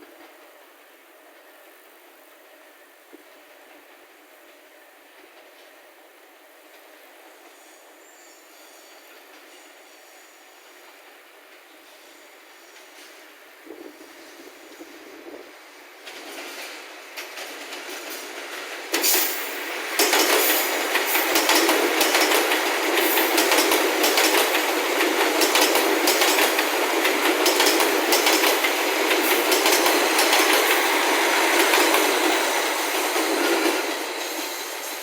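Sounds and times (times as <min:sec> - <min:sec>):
train passing: 0:08.8 - 0:35.0
wheels clicking on rails: 0:16.0 - 0:30.9.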